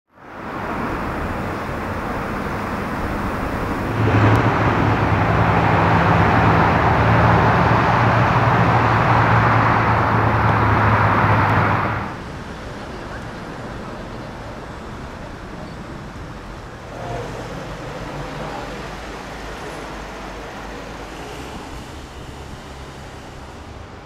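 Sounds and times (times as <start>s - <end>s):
street traffic noise: 0.1s - 24.0s
vehicle engine running: 1.4s - 12.2s.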